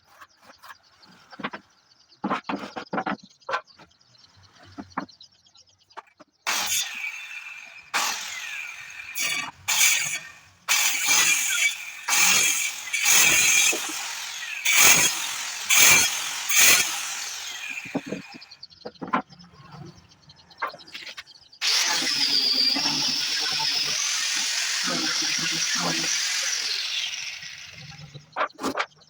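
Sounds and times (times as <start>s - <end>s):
power tool cutting wood: 6.5s - 18.6s, 21.6s - 28.8s.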